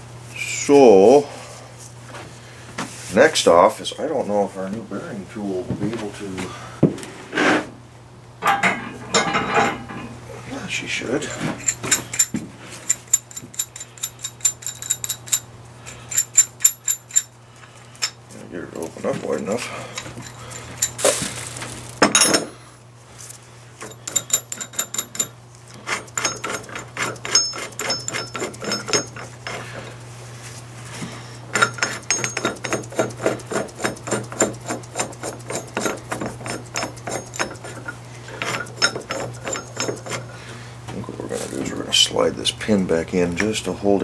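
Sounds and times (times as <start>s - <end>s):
steady low hum: 0.0s - 44.0s
metal parts clinking and tapping: 8.4s - 10.0s, 11.3s - 18.2s, 19.9s - 21.4s, 22.0s - 22.6s, 23.8s - 29.6s, 31.5s - 40.3s.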